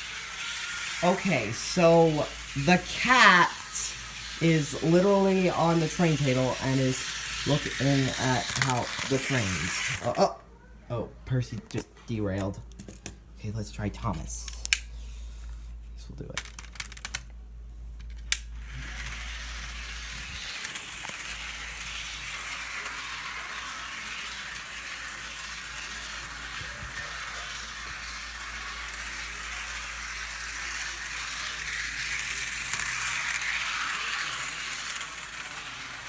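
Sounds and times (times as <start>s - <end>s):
model train rattling on track: 0.0s - 10.0s, 18.7s - 36.0s
sharp plastic clicks: 16.3s - 17.3s.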